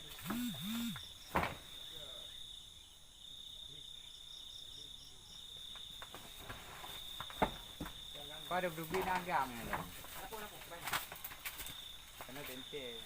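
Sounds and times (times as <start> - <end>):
faint pulsed insect chirps: 0.0 - 8.6
insects chirring: 0.0 - 13.0.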